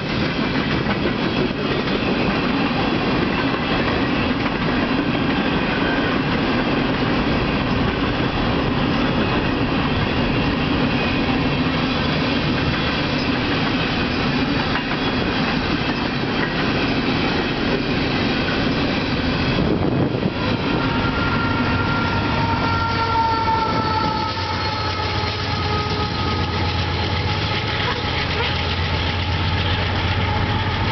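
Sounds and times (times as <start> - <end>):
train wheels rumbling on rail: 0.0 - 30.9
high wheel squeals: 20.3 - 28.7.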